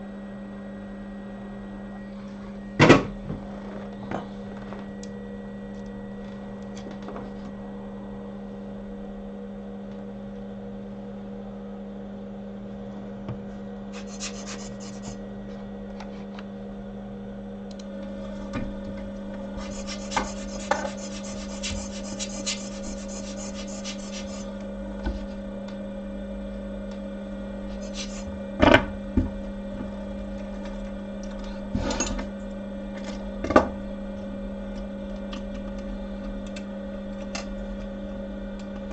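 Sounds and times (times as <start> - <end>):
electrical hum of bench equipment: 0.0 - 38.9
hand tools scraping and rubbing: 14.0 - 15.2, 19.6 - 24.5, 27.7 - 28.3.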